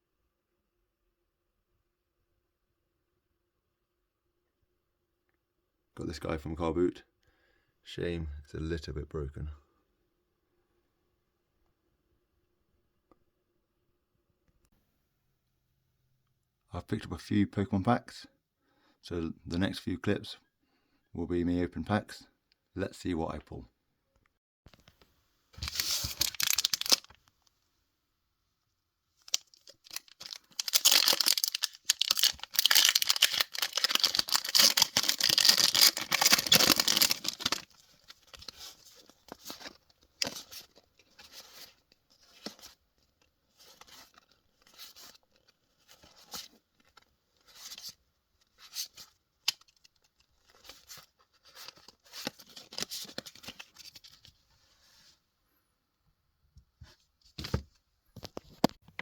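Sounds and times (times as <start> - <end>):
foil wrapper tearing and crinkling: 25.6 - 27.2, 29.2 - 38.5.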